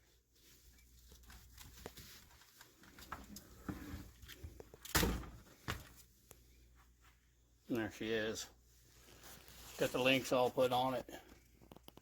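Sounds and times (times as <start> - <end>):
small clicks and taps: 11.6 - 12.0.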